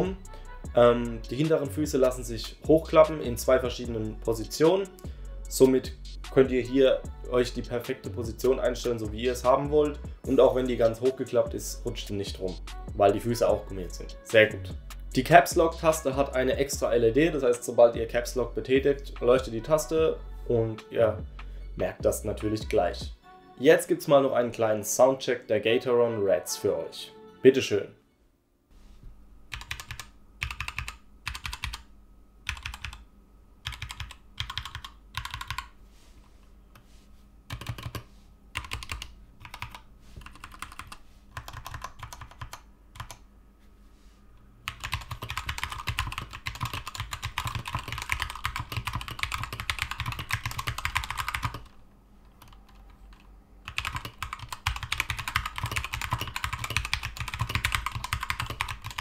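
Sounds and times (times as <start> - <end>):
mechanical keyboard typing: 29.5 - 31.8, 32.5 - 33.0, 33.6 - 35.7, 37.5 - 43.2, 44.7 - 51.7, 52.4 - 59.0.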